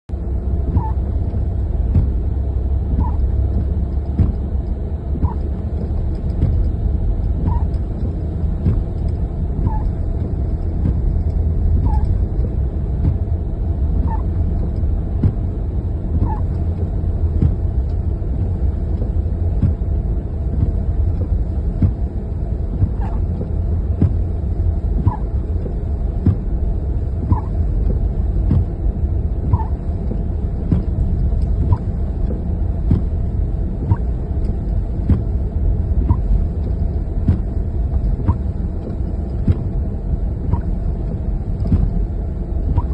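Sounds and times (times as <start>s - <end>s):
car road and engine rumble: 0.0s - 42.9s
short squeak: 0.8s - 1.0s, 3.0s - 3.2s, 7.5s - 7.7s, 9.6s - 10.0s, 11.8s - 12.2s, 14.0s - 14.3s, 16.2s - 16.5s, 27.3s - 27.5s, 29.5s - 29.8s.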